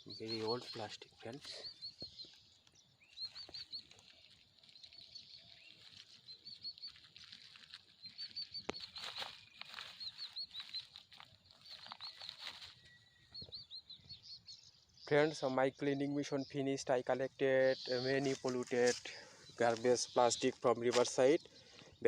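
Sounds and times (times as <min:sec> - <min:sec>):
small birds chirping: 0:00.0 - 0:22.0
rustling and crackling clicks: 0:02.0 - 0:12.8.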